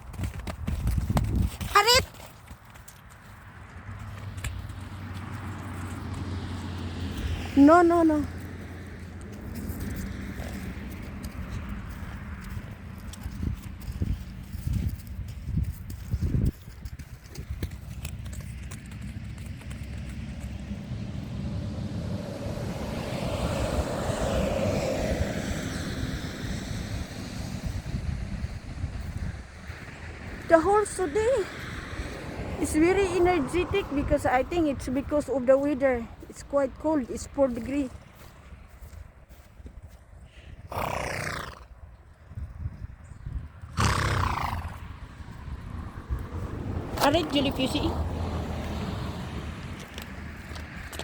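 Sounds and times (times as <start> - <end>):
wind buffeting microphone: 0.0 - 1.8, 9.8 - 19.4, 20.1 - 40.9, 42.0 - 51.0
passing engine: 3.2 - 51.0
horse whinnying: 40.7 - 41.7, 43.8 - 44.8.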